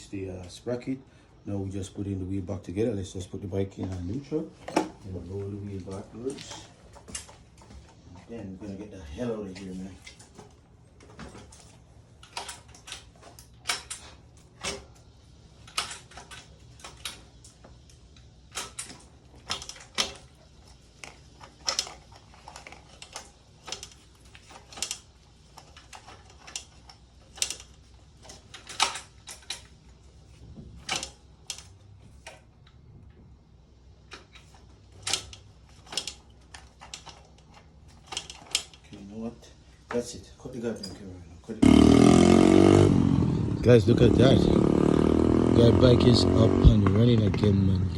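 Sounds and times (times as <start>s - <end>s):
hand tools clicking and clanking: 3.7s - 32.5s, 34.0s - 39.3s.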